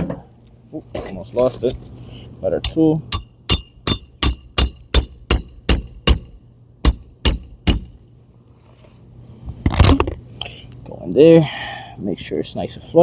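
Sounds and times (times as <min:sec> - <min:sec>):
hammer striking nail: 0:03.1 - 0:08.0.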